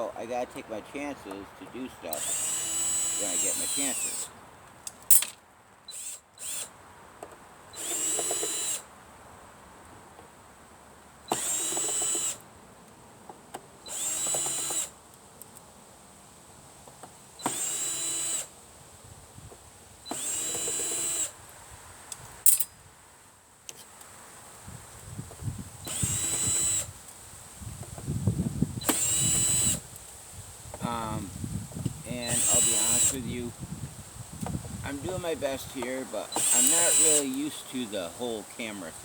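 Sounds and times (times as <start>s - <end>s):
electric drill-driver running: 2.2s - 4.3s, 5.9s - 6.7s, 7.8s - 8.8s, 11.3s - 12.4s, 13.9s - 14.9s, 17.4s - 18.5s, 20.1s - 21.3s, 25.8s - 26.9s, 28.8s - 29.8s, 32.2s - 33.2s, 35.9s - 37.4s.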